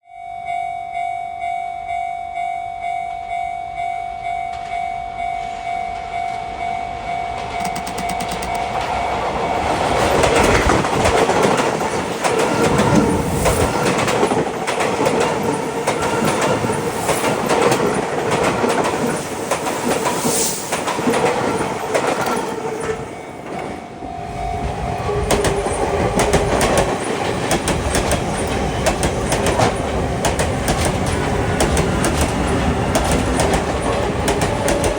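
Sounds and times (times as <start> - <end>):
level crossing warning bell ringing: 0.0 - 19.5, 21.2 - 31.7
train passing: 1.4 - 34.9
wheels clattering over rail joints: 7.2 - 23.9, 24.6 - 34.9.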